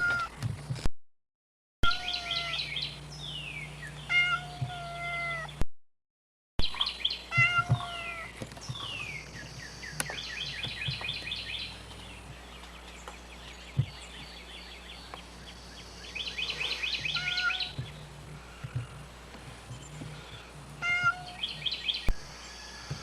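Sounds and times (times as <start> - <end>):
cat meowing: 1.8 - 2.6, 4.1 - 5.5, 7.3 - 8.3, 17.1 - 17.8, 20.8 - 21.4
birds chirping: 1.9 - 5.6, 6.6 - 23.0
steady low hum: 1.9 - 5.6, 6.6 - 23.0.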